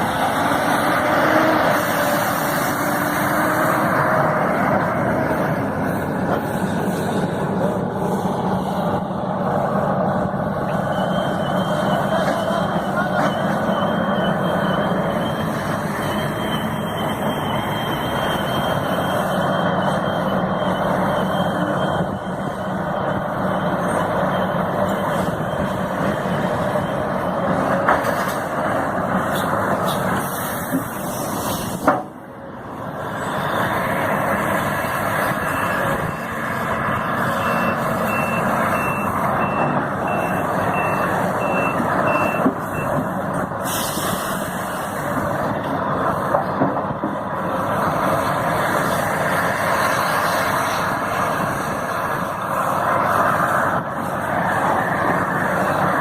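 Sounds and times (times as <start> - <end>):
heavy construction machinery running: 0.0 - 56.0
reversing alarm beeps: 10.6 - 27.4, 35.3 - 36.4, 37.0 - 43.0.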